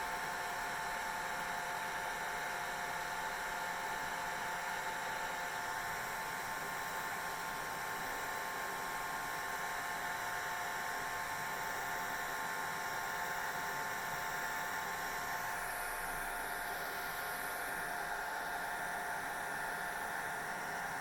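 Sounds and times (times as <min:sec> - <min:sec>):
hair dryer running: 0:00.0 - 0:21.0.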